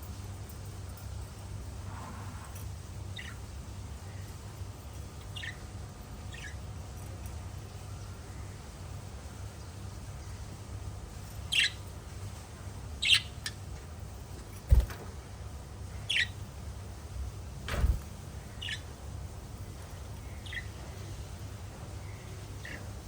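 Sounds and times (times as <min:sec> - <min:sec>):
steady low hum: 0:00.0 - 0:23.0
parrots chirping: 0:03.1 - 0:03.5, 0:05.2 - 0:06.7, 0:11.4 - 0:11.8, 0:13.0 - 0:13.6, 0:16.0 - 0:16.4, 0:18.4 - 0:19.0, 0:20.1 - 0:20.8, 0:22.1 - 0:23.0.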